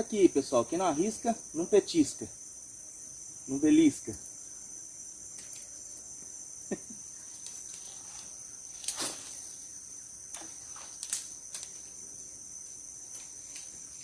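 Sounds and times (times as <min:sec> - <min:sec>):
insects droning: 0:00.0 - 0:14.0.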